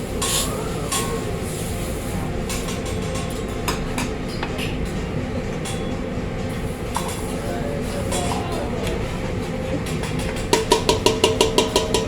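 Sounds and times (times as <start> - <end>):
busy restaurant rumble: 0.0 - 12.0
metal spatulas clinking on griddle: 9.8 - 12.0.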